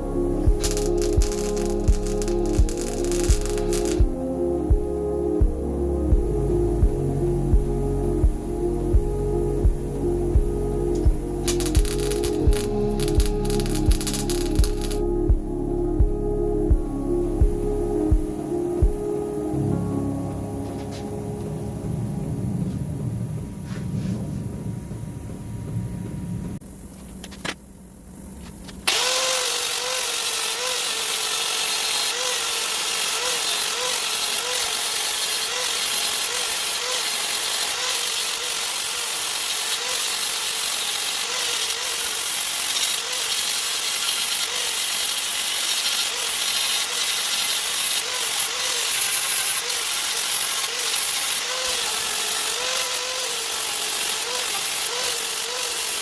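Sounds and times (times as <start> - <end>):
low rumble: 0.0 - 26.6
power tool running under load: 28.9 - 56.0.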